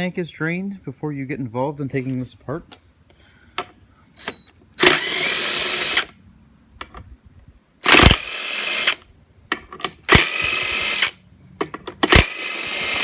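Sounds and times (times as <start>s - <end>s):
power drill running: 4.2s - 6.1s, 7.8s - 9.0s, 10.1s - 11.2s, 12.0s - 13.0s.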